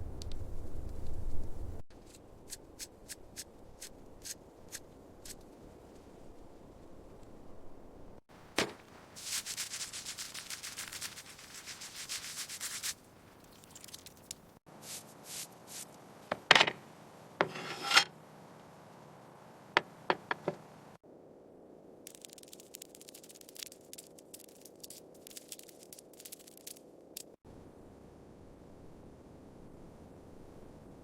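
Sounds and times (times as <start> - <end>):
rubbing or sanding strokes: 9.2 - 13.0, 14.8 - 15.9.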